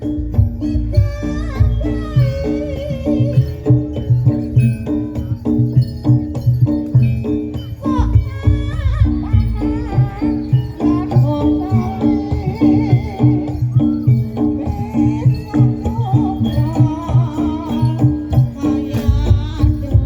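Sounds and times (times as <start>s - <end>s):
drums steady beat: 0.0s - 20.0s
jingling rattles: 0.0s - 20.0s
pitched percussion notes: 0.0s - 20.0s
wavering melody line: 0.0s - 20.0s.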